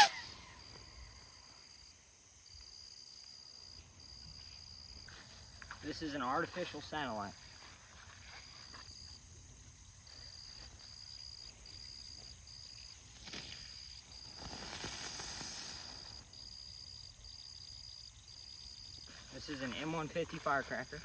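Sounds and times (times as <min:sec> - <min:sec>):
brief hiss: 0:00.0 - 0:00.9, 0:13.2 - 0:16.3
insects chirping: 0:00.0 - 0:21.0.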